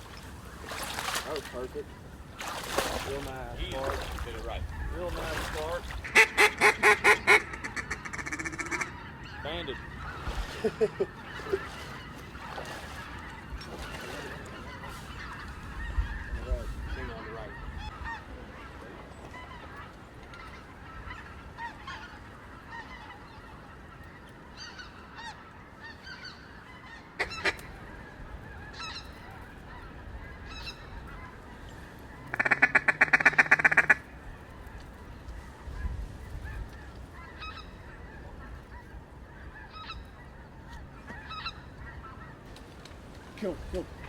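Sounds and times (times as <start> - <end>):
faint duck quacking: 0.6 - 42.5
duck call quacks: 6.0 - 12.2, 24.6 - 27.7, 32.2 - 34.1.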